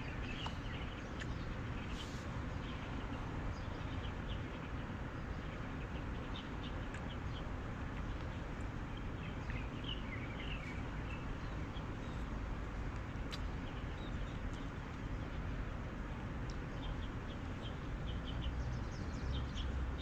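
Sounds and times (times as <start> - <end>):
low outdoor rumble: 0.0 - 20.0
small birds chirping: 0.0 - 20.0.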